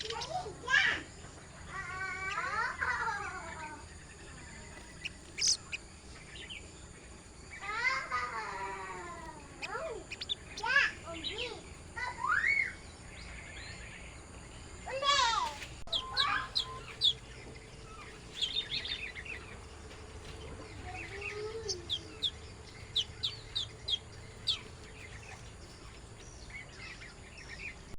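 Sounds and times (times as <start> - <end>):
small birds chirping: 0.0 - 27.9.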